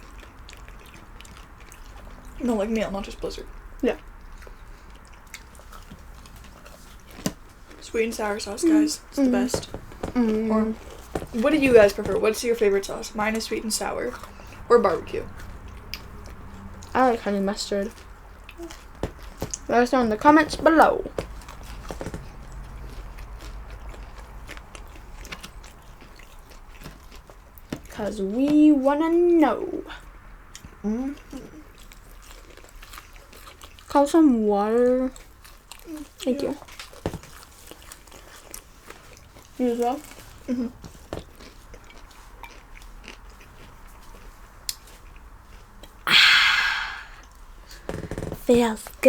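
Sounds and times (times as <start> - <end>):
crunchy chewing: 0.0 - 28.8, 29.9 - 46.0
loud breathy rush of noise: 46.1 - 47.3.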